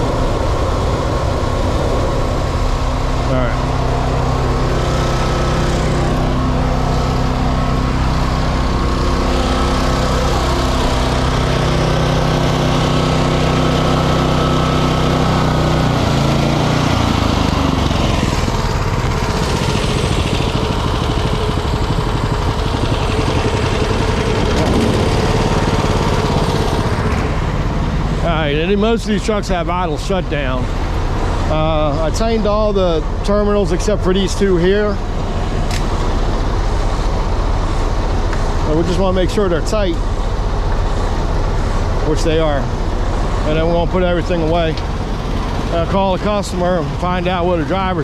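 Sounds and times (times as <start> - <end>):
diesel truck engine running: 0.0 - 48.0.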